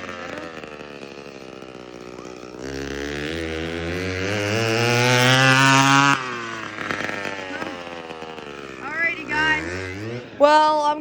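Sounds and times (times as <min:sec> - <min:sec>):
loud scooter engine revving: 0:00.0 - 0:11.0.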